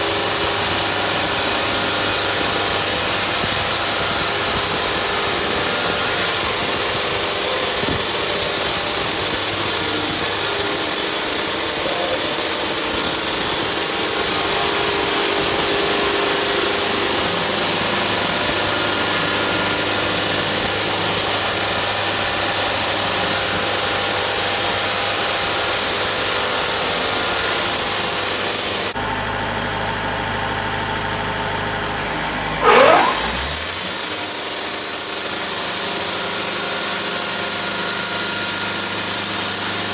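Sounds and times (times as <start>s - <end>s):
saw blade cutting log: 0.0s - 29.0s, 32.6s - 39.9s
sawmill engine droning: 0.0s - 39.9s
short rising whine: 32.6s - 39.8s.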